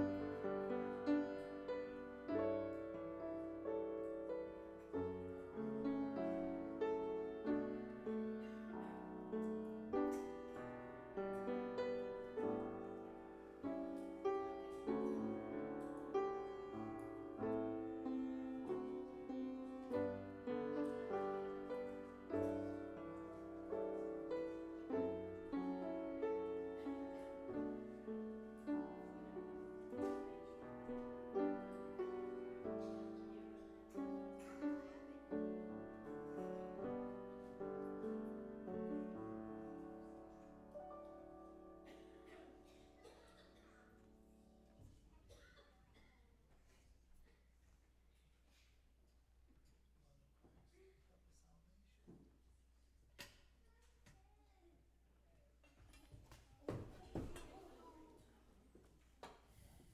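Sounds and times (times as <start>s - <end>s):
slow piano music: 0.0s - 44.8s.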